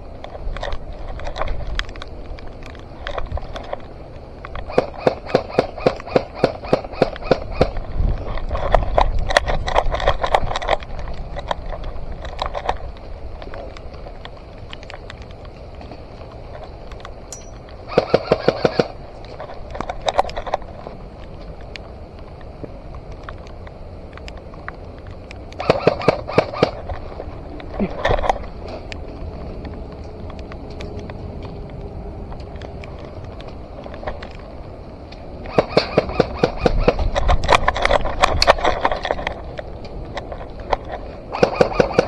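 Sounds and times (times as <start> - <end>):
airsoft rifle firing: 4.7 - 7.8, 17.9 - 19.0, 25.6 - 26.8, 35.5 - 37.0, 41.3 - 42.0.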